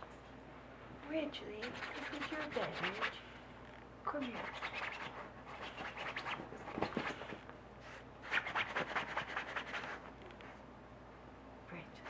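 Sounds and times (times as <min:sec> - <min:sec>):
animal scratching on fabric: 0:01.6 - 0:03.2, 0:04.2 - 0:10.1.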